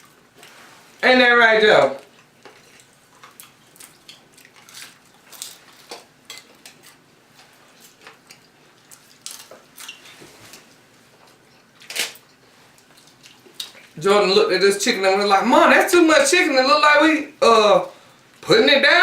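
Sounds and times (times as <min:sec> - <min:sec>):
chewing and mouth clicks: 0:02.0 - 0:10.3, 0:11.2 - 0:14.0.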